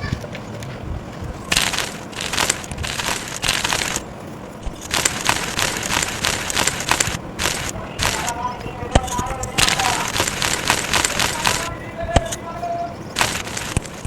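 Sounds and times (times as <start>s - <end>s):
chalk crunching and crumbling: 9.0s - 12.4s.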